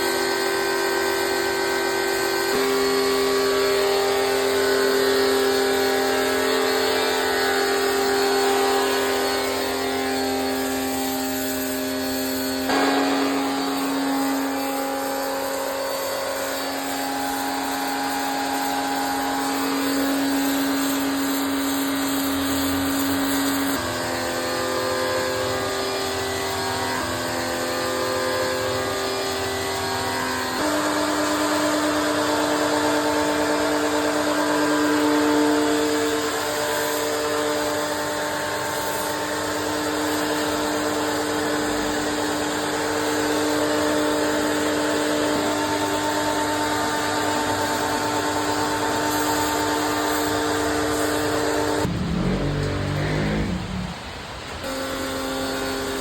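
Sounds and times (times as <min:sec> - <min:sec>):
pressure washer motor humming: 0:00.0 - 0:55.3
water spray hissing: 0:51.8 - 0:54.6.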